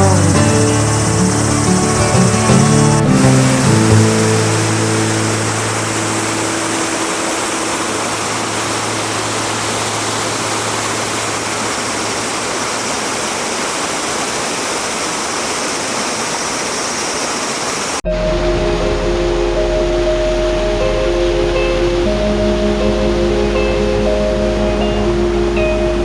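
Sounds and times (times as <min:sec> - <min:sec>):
mountain water rushing: 0:00.0 - 0:18.0.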